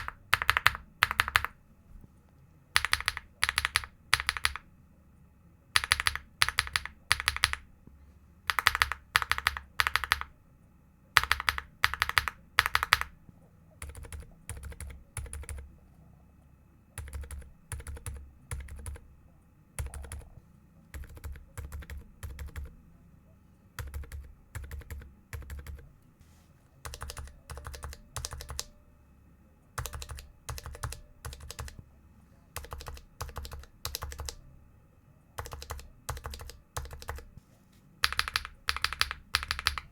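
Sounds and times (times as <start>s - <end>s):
mechanical keyboard typing: 0.0s - 1.6s, 2.8s - 4.7s, 5.8s - 7.7s, 8.5s - 10.3s, 11.2s - 13.2s, 13.8s - 15.6s, 17.0s - 19.0s, 19.8s - 22.7s, 23.8s - 25.8s, 26.8s - 28.7s, 29.8s - 31.8s, 32.6s - 34.4s, 35.4s - 37.3s, 38.0s - 39.9s.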